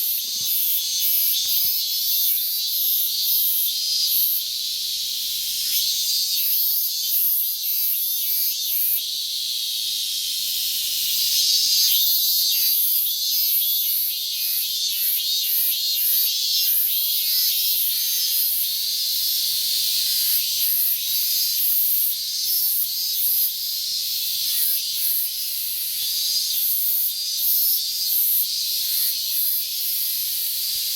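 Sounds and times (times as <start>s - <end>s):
cicadas singing loudly: 0.0s - 30.9s.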